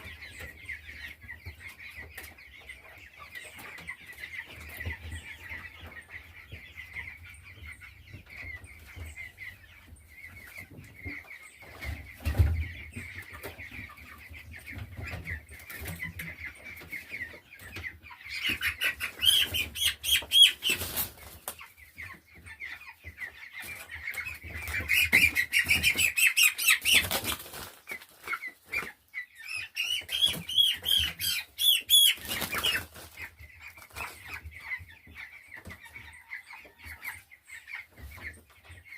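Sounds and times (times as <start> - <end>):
chicks peeping: 0.0 - 38.9
wings flapping: 24.6 - 28.9, 31.8 - 33.2.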